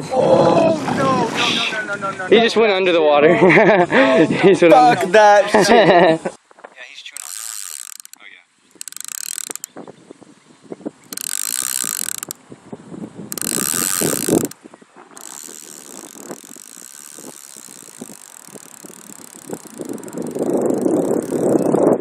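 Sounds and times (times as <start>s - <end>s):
wind rumble on microphone: 0.0s - 2.4s, 9.5s - 22.0s
fishing reel clicker ratcheting: 7.1s - 9.7s, 11.1s - 12.4s, 13.3s - 14.6s, 15.2s - 21.8s.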